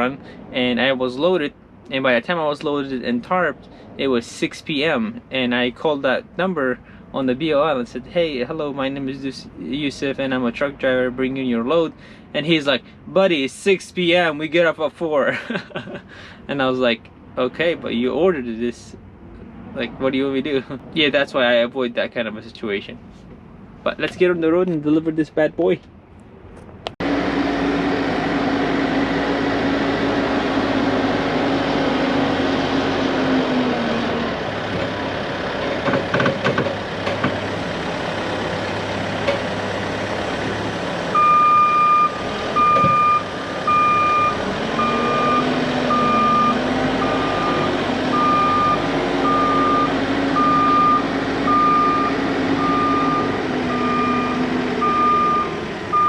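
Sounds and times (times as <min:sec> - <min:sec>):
engine running: 0:26.9 - 0:56.0
reversing alarm beeping: 0:41.2 - 0:56.0.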